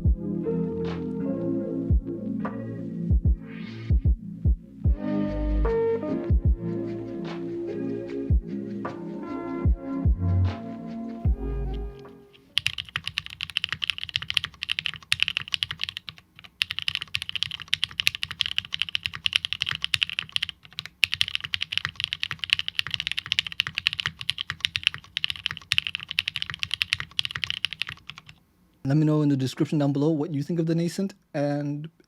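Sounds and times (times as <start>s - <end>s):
music: 0.0s - 12.6s
mechanical keyboard typing: 12.5s - 28.4s.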